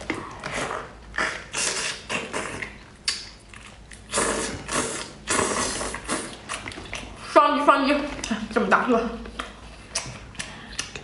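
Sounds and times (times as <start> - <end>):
chewing: 0.0 - 7.3, 9.3 - 11.0.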